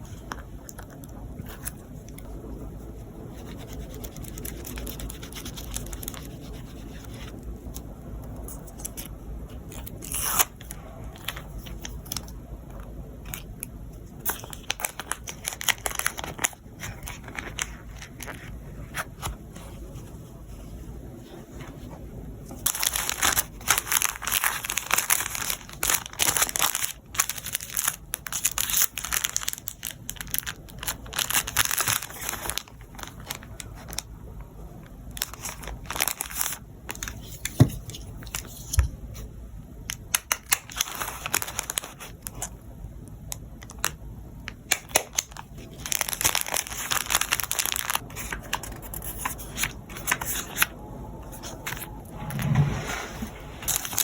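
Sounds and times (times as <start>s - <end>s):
packaging crinkling and tearing: 3.4s - 7.8s, 8.4s - 19.3s, 22.6s - 34.1s, 35.2s - 38.8s, 39.9s - 42.5s, 44.7s - 50.8s, 53.6s - 54.0s.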